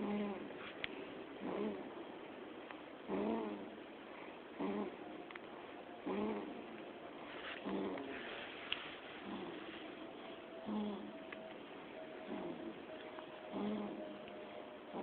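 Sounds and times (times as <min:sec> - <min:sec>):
baby snoring: 0:01.4 - 0:01.9, 0:03.1 - 0:05.1, 0:06.0 - 0:06.7, 0:07.6 - 0:08.3, 0:09.2 - 0:11.2, 0:12.3 - 0:12.8, 0:13.5 - 0:14.2.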